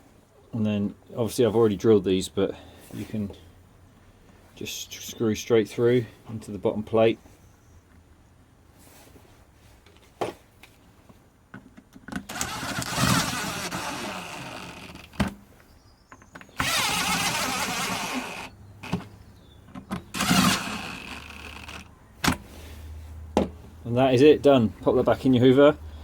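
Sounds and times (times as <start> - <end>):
cordless drill driving screws: 12.2 - 15.3, 16.6 - 19.1, 20.0 - 21.9.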